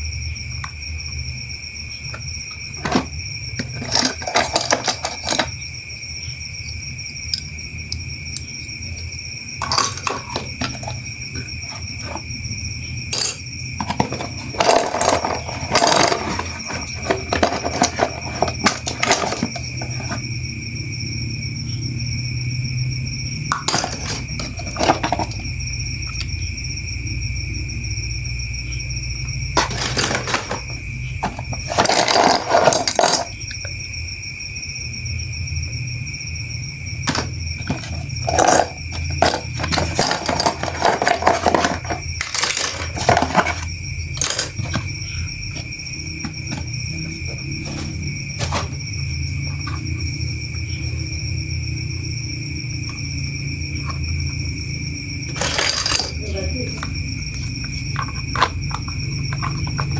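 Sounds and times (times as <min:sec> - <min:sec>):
plastic rattles: 0:02.8 - 0:05.6, 0:09.6 - 0:12.2, 0:13.1 - 0:20.2, 0:23.5 - 0:25.5, 0:29.6 - 0:33.6, 0:37.0 - 0:48.8, 0:55.3 - 0:59.9
plastic parts clicking together: 0:13.1 - 0:20.2, 0:29.6 - 0:33.4, 0:37.1 - 0:44.9.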